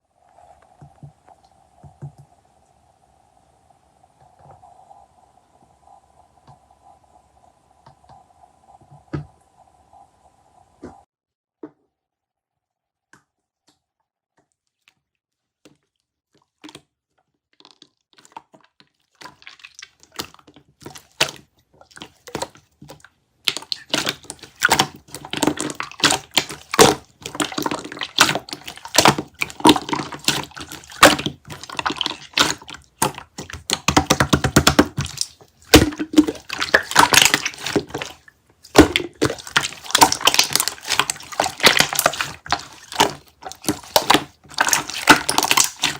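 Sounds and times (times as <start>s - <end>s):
wet squishing of jelly: 13.6s - 45.9s.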